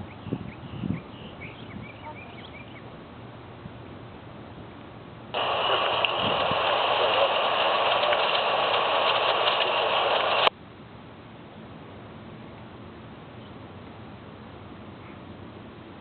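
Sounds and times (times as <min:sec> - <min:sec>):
radio scanner static hiss: 0:05.3 - 0:10.5
radio scanner click: 0:05.4 - 0:10.5.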